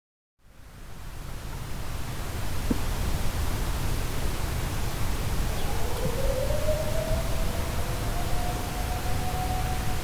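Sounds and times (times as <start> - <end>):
distant warning siren rising: 5.4 - 10.0.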